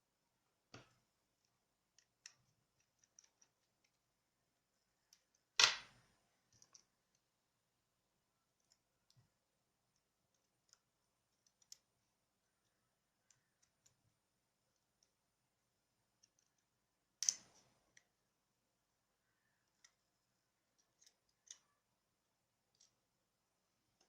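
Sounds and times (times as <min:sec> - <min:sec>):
small clicks of phone parts: 0:16.2 - 0:18.1.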